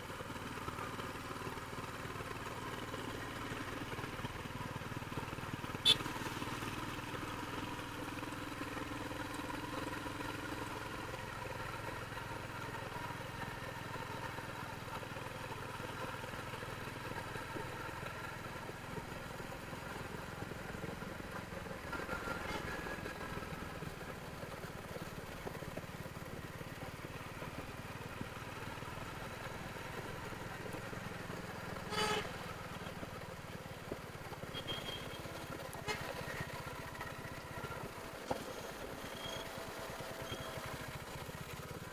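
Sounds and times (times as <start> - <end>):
motorcycle engine running: 0.0 - 41.9
horn beep: 34.5 - 35.3.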